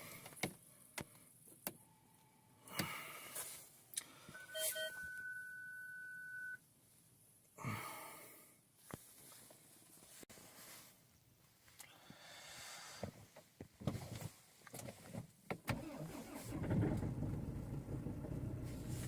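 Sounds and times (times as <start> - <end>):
dashboard beep: 4.3 - 6.6
rustling: 8.8 - 11.8
ignition clicks: 15.5 - 19.0.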